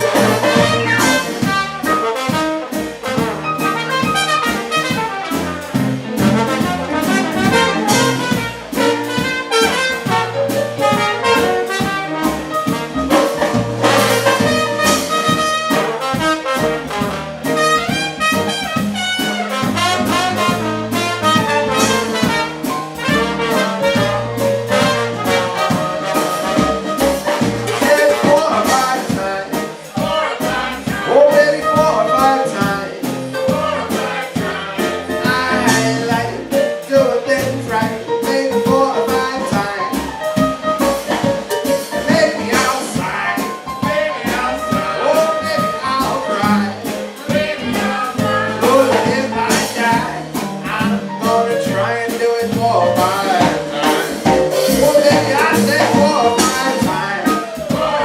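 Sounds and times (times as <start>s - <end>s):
jazz band playing: 0.0s - 58.0s
trombone: 0.0s - 58.0s
trumpet: 0.0s - 58.0s.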